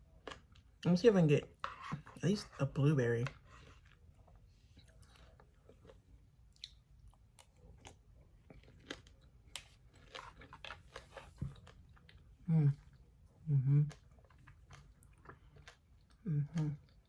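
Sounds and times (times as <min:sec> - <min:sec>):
chewing crunchy seeds: 0:03.3 - 0:13.1, 0:13.8 - 0:17.0.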